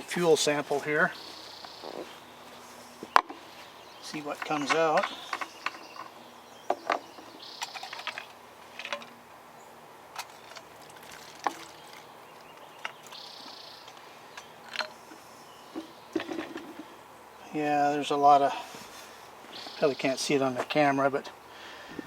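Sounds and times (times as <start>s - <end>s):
fuel trickling: 10.0s - 17.2s.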